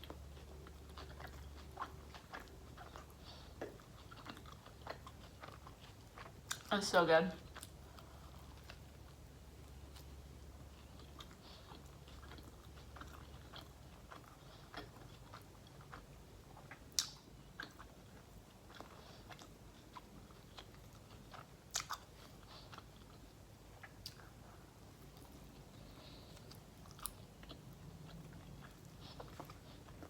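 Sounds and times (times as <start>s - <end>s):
chewing sandwich: 0.0s - 6.7s, 7.4s - 30.0s
wet mouth clicks and smacks: 16.9s - 17.2s.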